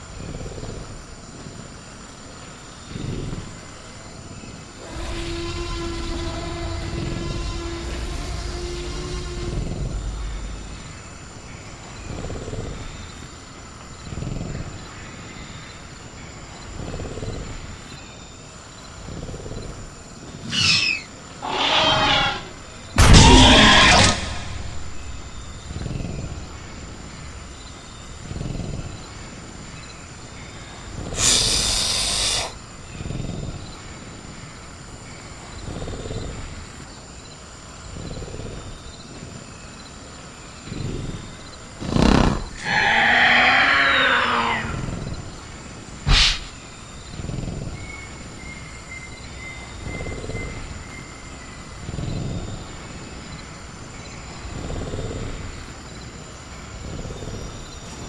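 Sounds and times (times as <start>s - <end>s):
crickets chirring: 0.0s - 58.0s
creature screeching call: 20.5s - 25.1s, 42.6s - 44.9s
creature hissing: 20.5s - 25.3s, 31.1s - 32.6s, 41.9s - 44.9s
creature growling: 21.4s - 29.3s, 41.9s - 45.1s
sharp knock: 23.0s - 27.0s
sharp crack: 23.0s - 28.2s.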